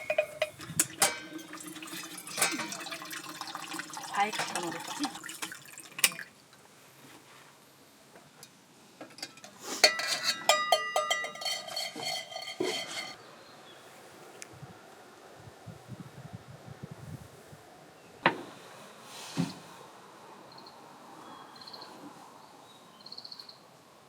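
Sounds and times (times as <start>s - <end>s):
dishes clinking together: 0.0s - 5.0s, 9.2s - 13.2s.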